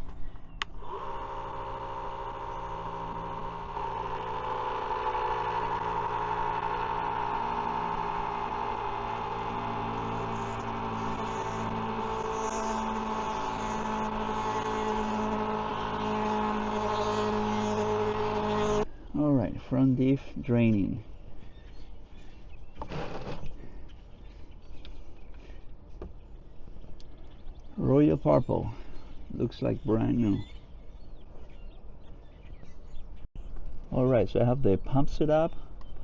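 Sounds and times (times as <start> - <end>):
electric oil pump humming: 0.6 - 18.9.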